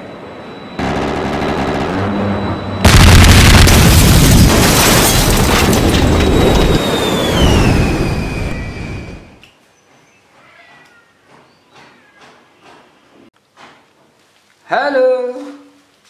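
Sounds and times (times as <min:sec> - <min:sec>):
thin falling whine: 0:00.0 - 0:09.5
low rumble: 0:00.8 - 0:09.3
explosion blast rumbling: 0:00.8 - 0:09.4.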